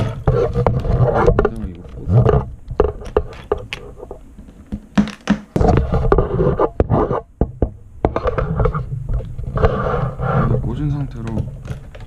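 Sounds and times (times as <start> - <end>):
cable handling taps and scratching: 0.0 - 7.2, 11.1 - 12.0.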